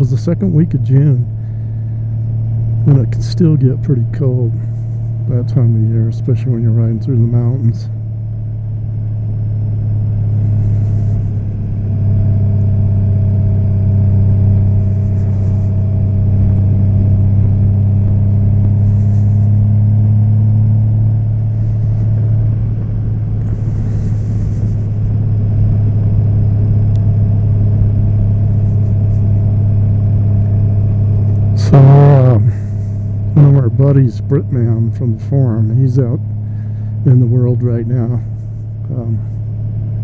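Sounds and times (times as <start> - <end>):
motorcycle engine running: 0.0 - 40.0.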